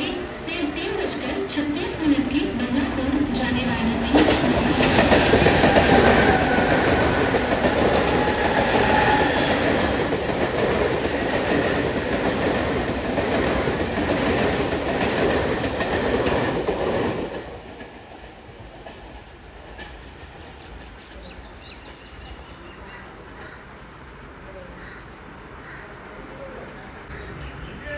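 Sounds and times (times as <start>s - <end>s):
wheels clattering over rail joints: 0.0s - 18.0s
electric train passing: 0.0s - 27.9s.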